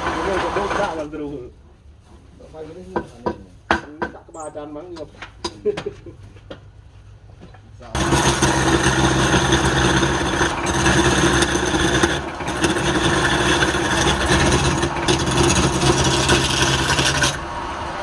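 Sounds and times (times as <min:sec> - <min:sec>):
lathe motor hum: 0:08.0 - 0:18.0.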